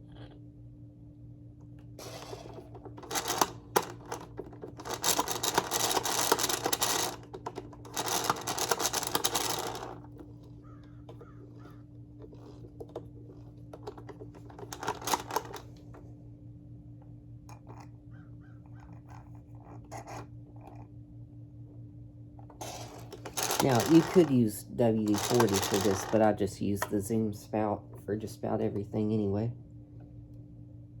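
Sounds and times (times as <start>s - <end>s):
steady low hum: 0.0s - 31.0s
vacuum wheels rolling and rattling: 2.0s - 15.9s, 22.6s - 27.1s.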